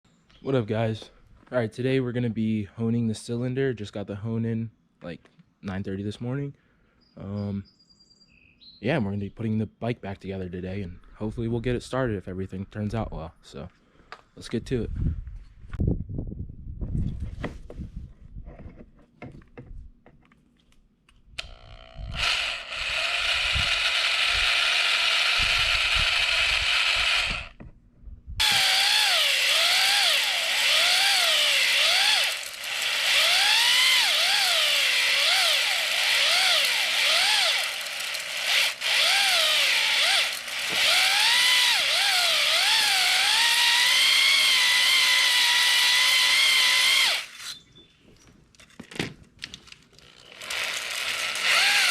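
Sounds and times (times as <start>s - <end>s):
electric drill spinning a hone: 21.4s - 27.6s, 28.4s - 47.6s, 50.1s - 51.9s.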